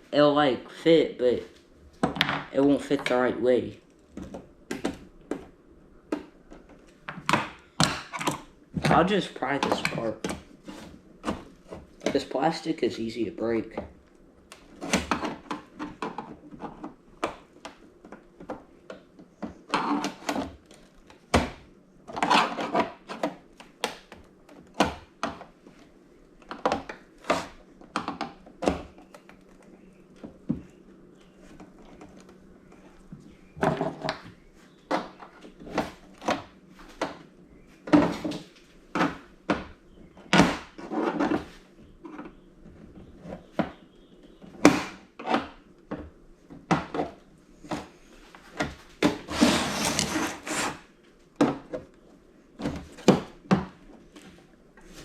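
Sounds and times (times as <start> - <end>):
plastic scraping and crunching: 46.5 - 52.0.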